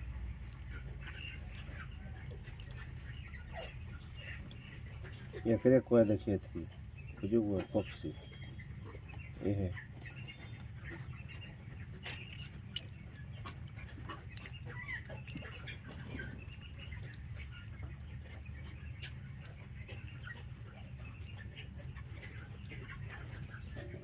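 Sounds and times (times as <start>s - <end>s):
chickens chirping and clucking: 0.0s - 24.0s
steady low hum: 8.0s - 24.0s.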